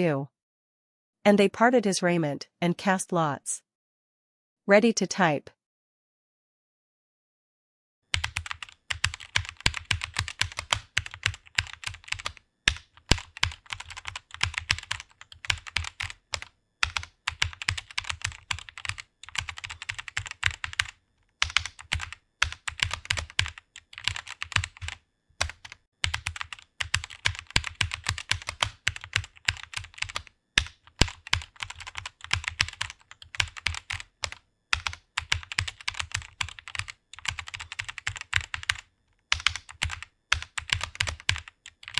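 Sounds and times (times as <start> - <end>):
fast typing on keyboard: 8.1 - 41.9.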